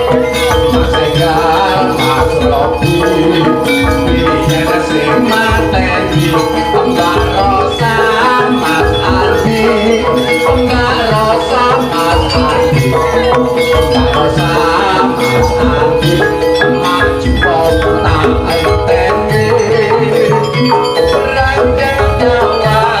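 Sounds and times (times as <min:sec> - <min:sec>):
drum beats: 0:00.0 - 0:23.0
ringing pitched percussion: 0:00.0 - 0:23.0.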